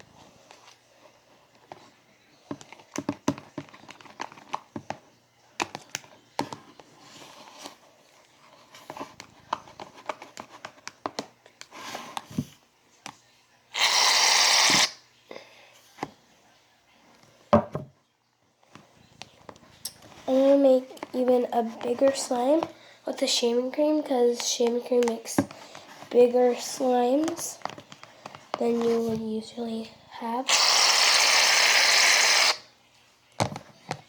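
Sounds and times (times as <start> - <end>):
loud hiss: 13.8 - 15.0, 30.5 - 32.6.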